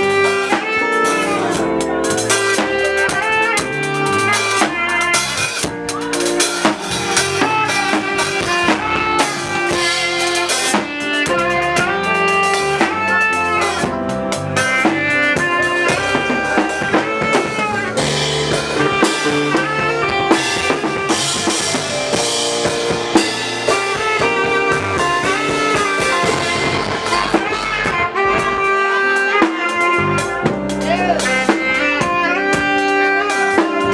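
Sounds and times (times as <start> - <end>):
band music: 0.0 - 33.9
drum kit steady beat: 0.0 - 33.9.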